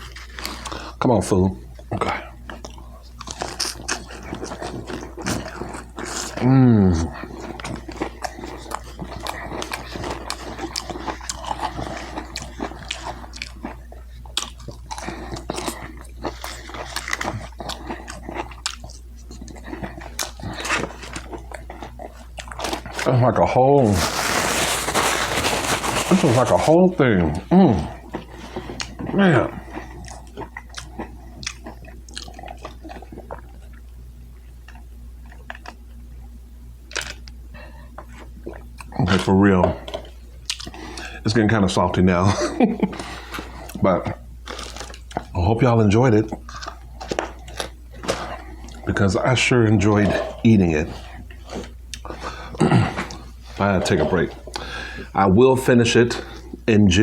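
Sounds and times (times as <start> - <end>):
person chewing food: 0.0 - 41.3, 42.4 - 55.2, 56.1 - 56.7
steady low hum: 0.0 - 57.0
wet chewing mouth clicks: 7.2 - 23.1, 29.8 - 33.8, 39.9 - 41.1.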